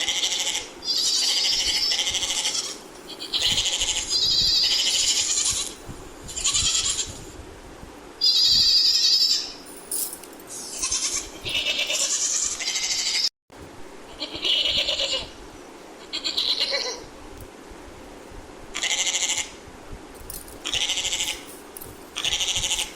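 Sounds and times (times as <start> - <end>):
goat bleating: 0.0 - 7.2, 10.8 - 13.3, 14.1 - 15.3, 16.0 - 17.0, 18.8 - 19.6, 20.6 - 21.5, 22.2 - 22.9.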